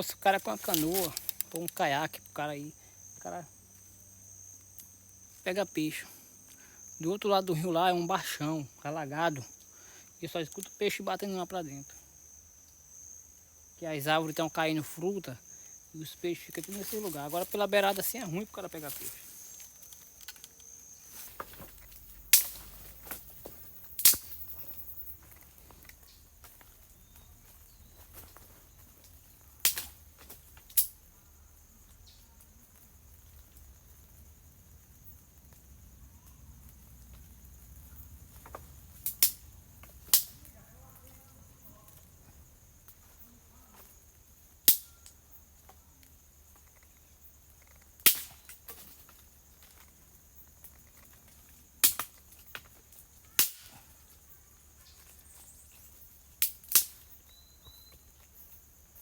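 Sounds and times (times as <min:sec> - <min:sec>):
high-pitched insect drone: 0:00.0 - 0:30.0
sharp cracks: 0:00.2 - 0:02.3, 0:18.8 - 0:23.3, 0:23.9 - 0:24.6, 0:29.6 - 0:31.0, 0:38.4 - 0:40.6, 0:47.6 - 0:49.0, 0:51.8 - 0:52.7, 0:53.3 - 0:53.8, 0:56.4 - 0:57.0.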